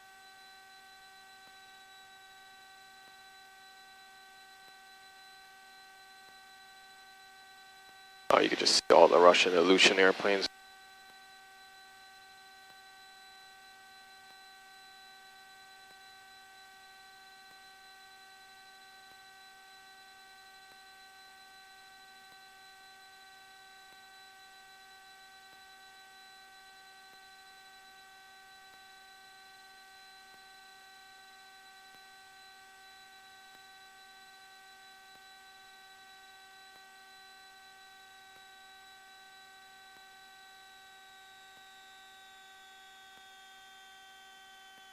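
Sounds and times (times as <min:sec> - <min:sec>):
faint electrical hum: 0:08.3 - 0:10.5.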